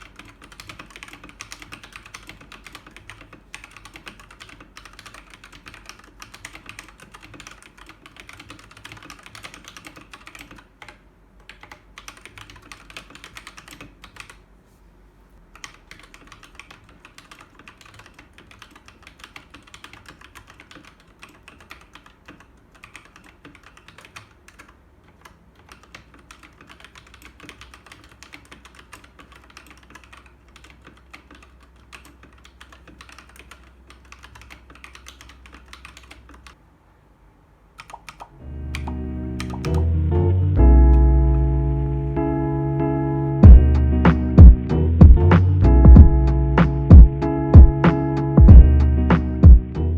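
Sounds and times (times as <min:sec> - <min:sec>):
mechanical keyboard typing: 0:00.0 - 0:14.4, 0:15.4 - 0:36.6, 0:37.8 - 0:39.8.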